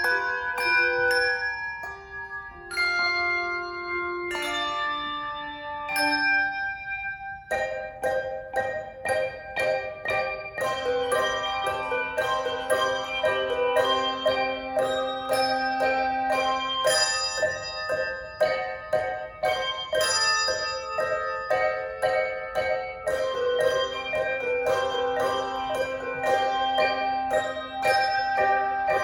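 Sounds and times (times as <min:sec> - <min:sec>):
handbell choir playing: 0:00.0 - 0:29.0.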